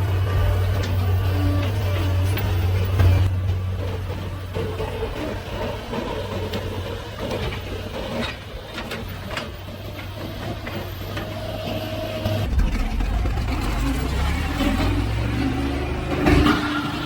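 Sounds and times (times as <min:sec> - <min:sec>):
heavy machine engine humming: 0:00.0 - 0:17.0.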